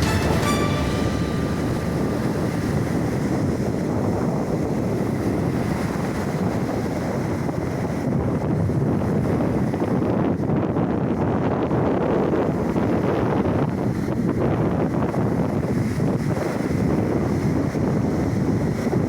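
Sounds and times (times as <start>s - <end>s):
sea waves washing: 0.0s - 7.8s
wind buffeting microphone: 1.1s - 19.0s.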